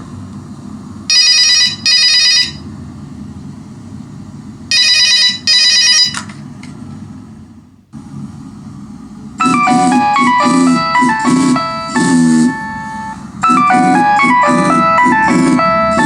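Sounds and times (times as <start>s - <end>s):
telephone bell ringing: 1.1s - 2.6s, 4.7s - 6.3s, 9.4s - 16.0s
low hum: 9.5s - 16.0s.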